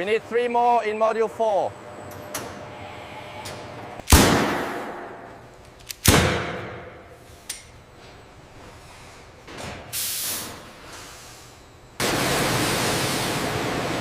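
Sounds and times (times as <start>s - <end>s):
sharp bangs: 4.0s - 5.3s, 6.0s - 7.1s.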